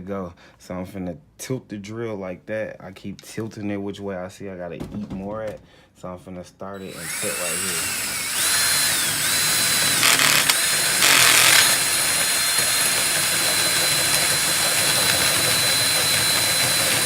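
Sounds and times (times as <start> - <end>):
power drill hole saw cutting metal: 6.8 - 17.0.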